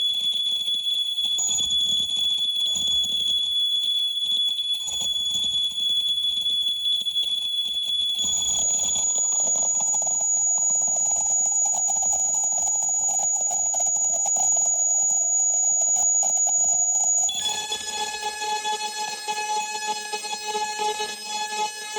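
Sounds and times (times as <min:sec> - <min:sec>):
piercing high tones: 0:08.2 - 0:21.9.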